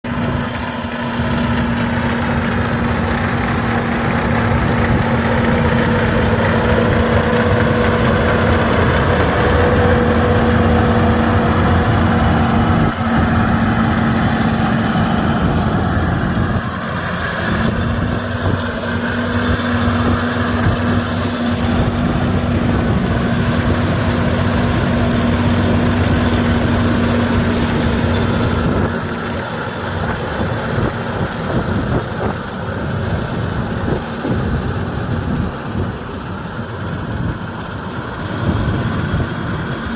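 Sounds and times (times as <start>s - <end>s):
combine harvester drone: 0.0s - 39.9s.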